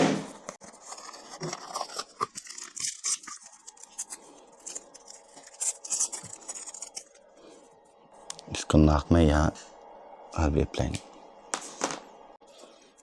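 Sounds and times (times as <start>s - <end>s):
packaging rustling and crinkling: 0.6s - 7.3s.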